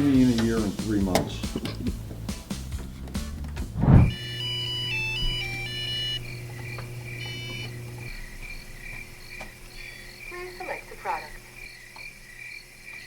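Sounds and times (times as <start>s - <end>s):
low thump: 3.8s - 4.2s.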